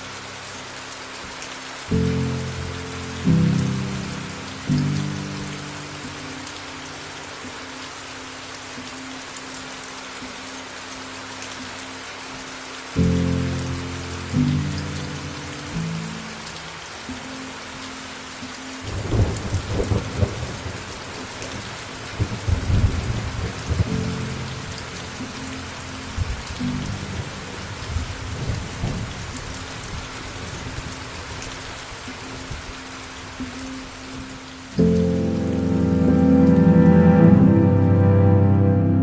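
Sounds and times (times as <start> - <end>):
steady rain: 0.0 - 39.0
thunder rumbling: 18.9 - 24.1.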